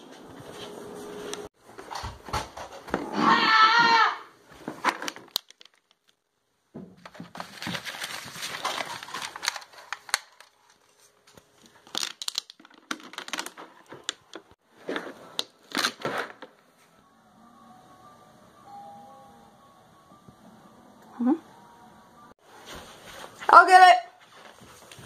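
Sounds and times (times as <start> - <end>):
rustling and crinkling: 4.5 - 6.2, 6.8 - 17.0, 24.2 - 25.0.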